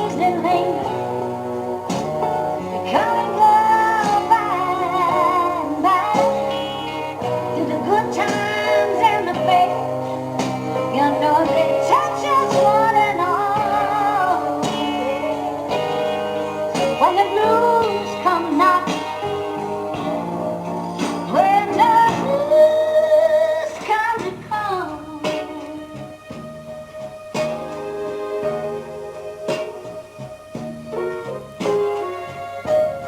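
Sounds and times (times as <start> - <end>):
woman singing: 0.0 - 1.2, 2.9 - 10.0, 10.7 - 15.9, 16.8 - 19.4, 21.2 - 26.1
guitar accompaniment: 0.0 - 33.0.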